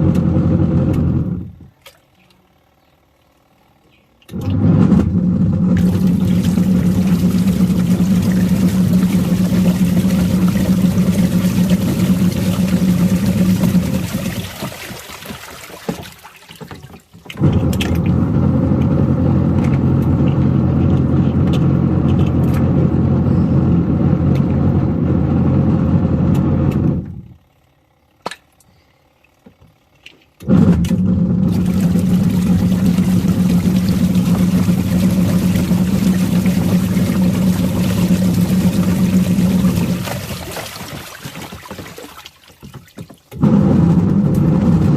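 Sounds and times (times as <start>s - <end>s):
washing machine motor humming: 0.0s - 44.9s
toys churning in water: 4.3s - 22.7s, 30.5s - 44.9s.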